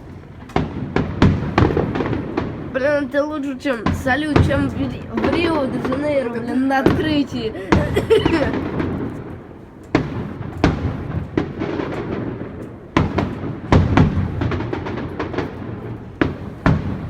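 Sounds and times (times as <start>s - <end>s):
fireworks booming: 0.0s - 17.0s.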